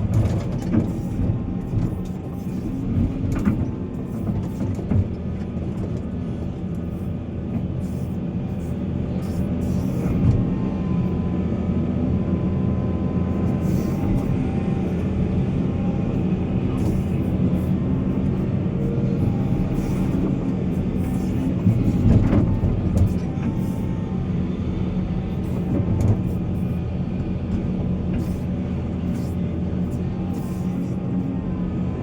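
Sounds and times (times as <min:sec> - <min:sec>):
diesel machinery engine drone: 0:00.0 - 0:32.0.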